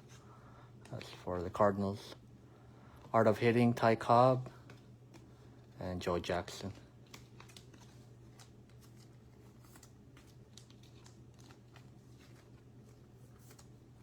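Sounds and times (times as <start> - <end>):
low steady hum: 0.0 - 14.0
trading cards clicking and sliding: 6.4 - 14.0.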